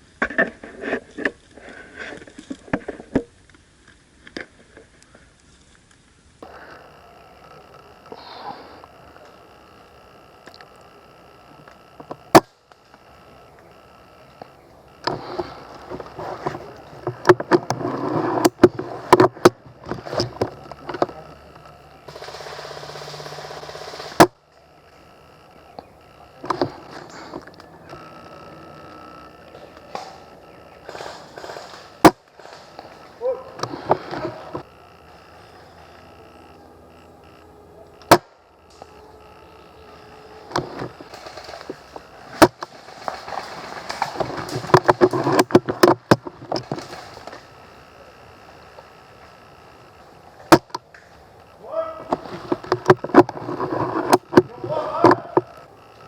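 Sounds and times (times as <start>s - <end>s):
rustling: 0.0s - 56.0s
sharp clicks and cracks: 0.1s - 56.0s
airsoft gun shots: 22.1s - 24.4s.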